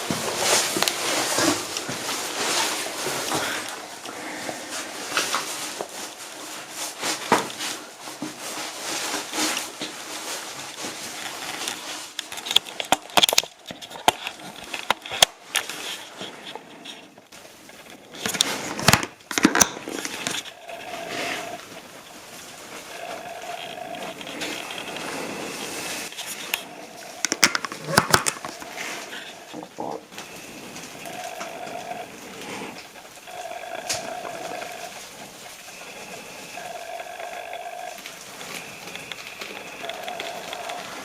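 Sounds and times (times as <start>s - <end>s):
scraping and rustling: 0.0s - 41.0s.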